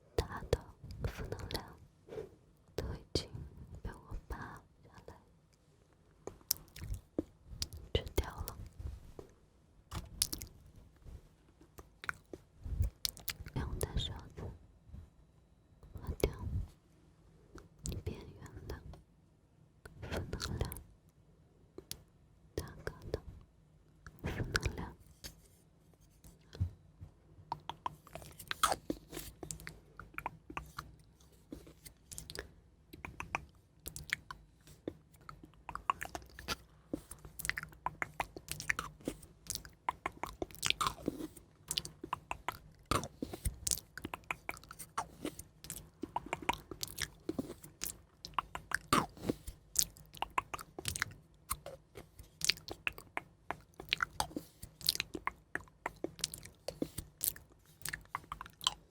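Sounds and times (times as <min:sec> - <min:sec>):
crunchy chewing and biting: 0:33.0 - 0:58.9.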